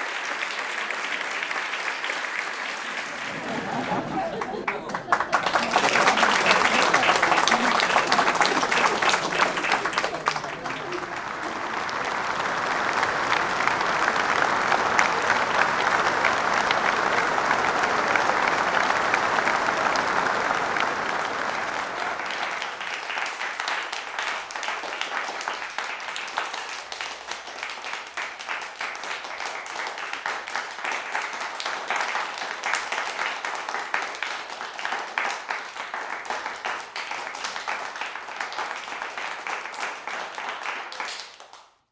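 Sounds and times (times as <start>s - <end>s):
crowd applauding: 0.0s - 41.6s.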